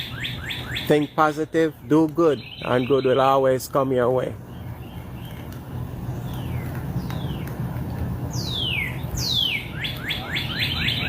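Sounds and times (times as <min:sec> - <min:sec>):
bird chirping: 0:00.0 - 0:03.6, 0:04.3 - 0:07.6, 0:08.3 - 0:11.0
bird whistling falling notes: 0:08.3 - 0:11.0.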